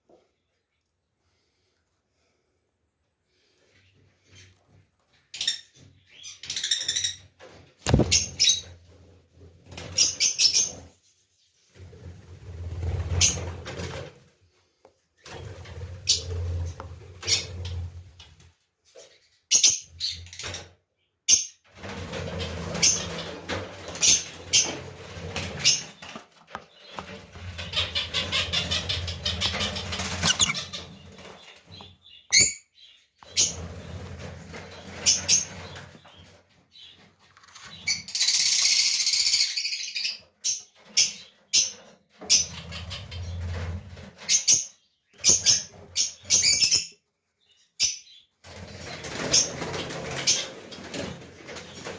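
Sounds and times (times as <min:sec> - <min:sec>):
short bird chirps: 0:30.2 - 0:30.7.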